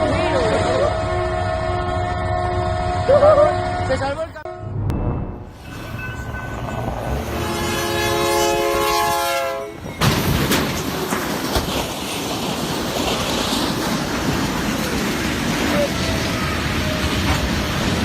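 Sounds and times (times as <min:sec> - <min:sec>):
train passing rush: 0:00.0 - 0:18.0
train horn chord: 0:07.2 - 0:09.8
wheels clicking over rail joints: 0:09.8 - 0:18.0.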